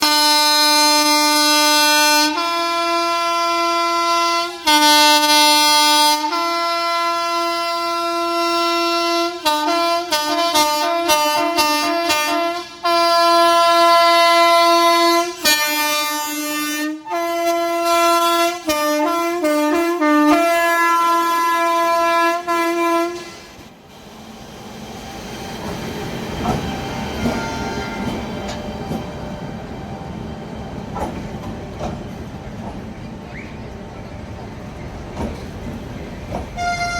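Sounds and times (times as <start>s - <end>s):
locomotive air horns: 0.0s - 23.7s, 27.1s - 28.6s, 36.5s - 36.9s
train rolling rumble: 0.0s - 36.9s.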